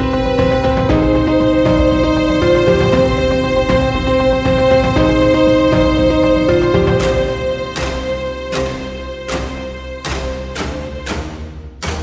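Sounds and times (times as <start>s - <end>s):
held tones background music: 0.0s - 12.0s
sharp percussive hits: 7.0s - 12.0s.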